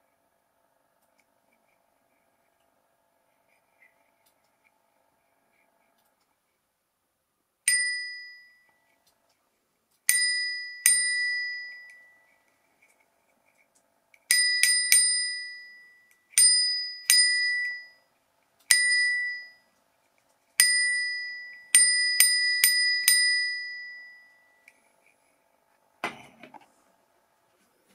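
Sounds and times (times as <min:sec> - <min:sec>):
bicycle bell dinging: 0:07.7 - 0:08.8, 0:10.1 - 0:12.3, 0:14.3 - 0:18.1, 0:18.7 - 0:19.7, 0:20.6 - 0:24.6.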